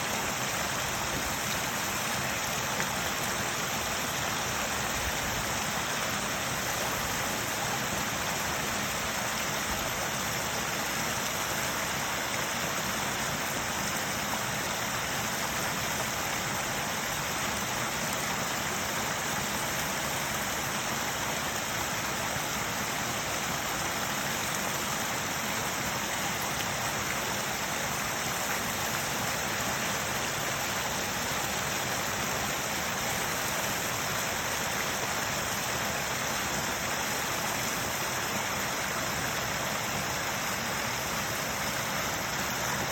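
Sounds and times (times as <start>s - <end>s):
water splashing over rocks: 0.0s - 42.9s.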